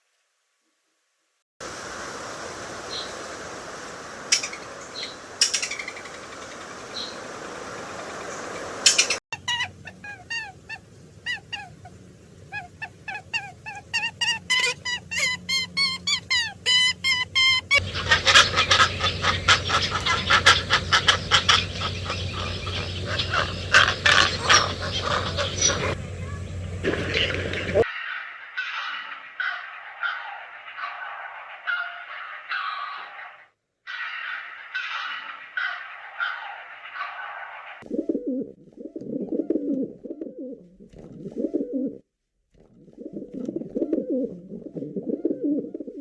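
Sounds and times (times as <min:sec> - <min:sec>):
birds calling: 0:01.6 - 0:40.5
flock calling rapidly: 0:02.6 - 0:11.9, 0:12.5 - 0:26.4.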